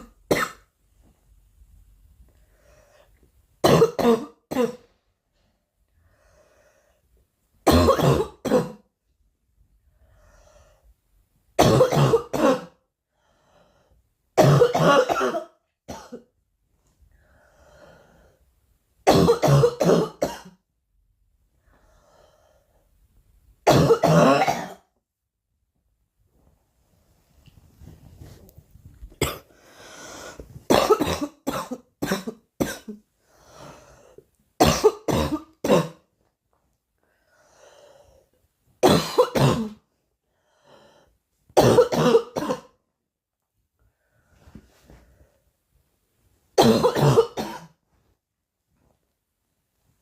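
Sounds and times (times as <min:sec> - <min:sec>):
girl coughing: 0:00.0 - 0:00.7, 0:03.6 - 0:04.9, 0:07.7 - 0:08.9, 0:11.6 - 0:12.8, 0:14.4 - 0:16.3, 0:19.1 - 0:20.6, 0:23.7 - 0:24.9, 0:29.2 - 0:29.5, 0:30.7 - 0:33.0, 0:34.6 - 0:36.0, 0:38.8 - 0:39.8, 0:41.6 - 0:42.8, 0:46.6 - 0:47.8
faint breaths: 0:02.2 - 0:03.4, 0:04.9 - 0:07.3, 0:13.0 - 0:14.2, 0:16.8 - 0:18.7, 0:21.6 - 0:23.0, 0:29.5 - 0:30.7, 0:33.1 - 0:34.4, 0:37.0 - 0:38.4, 0:40.1 - 0:41.3.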